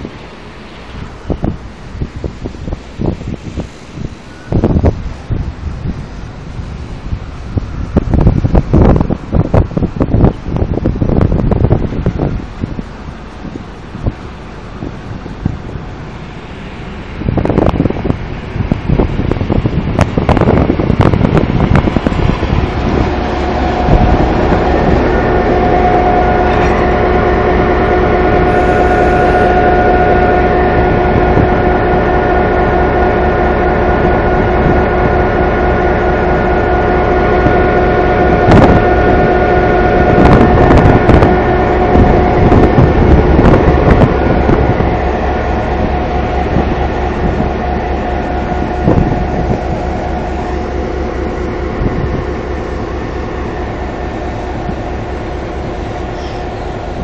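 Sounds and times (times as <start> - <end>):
freight train running: 0.0 - 57.0
sharp train clatters: 0.0 - 57.0
steady held tones: 20.1 - 57.0.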